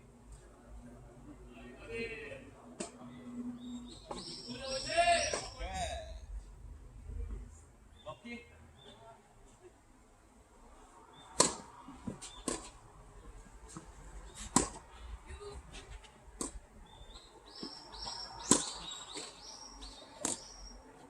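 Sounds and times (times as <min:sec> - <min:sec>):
rackets hitting tennis ball: 0:04.1 - 0:05.6, 0:11.4 - 0:12.8, 0:13.7 - 0:14.9, 0:16.0 - 0:16.6, 0:17.5 - 0:19.5, 0:20.2 - 0:20.6.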